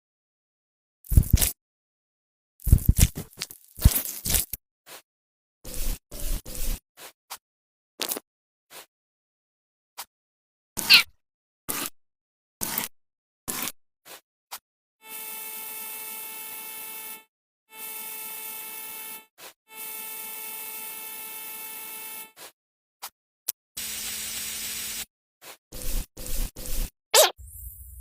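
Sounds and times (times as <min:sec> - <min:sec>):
short clicks and blips: 0:10.8 - 0:11.1, 0:27.2 - 0:27.4.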